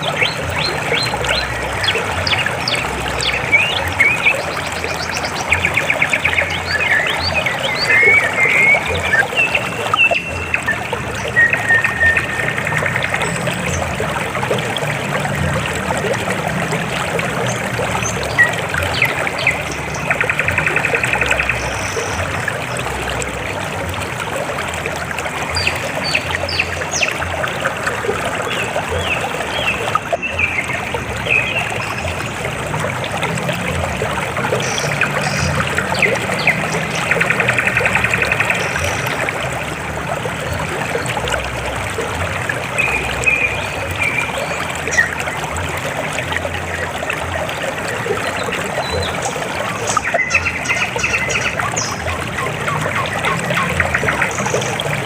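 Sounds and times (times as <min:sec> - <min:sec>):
river water flowing over rocks: 0:00.0 - 0:55.0.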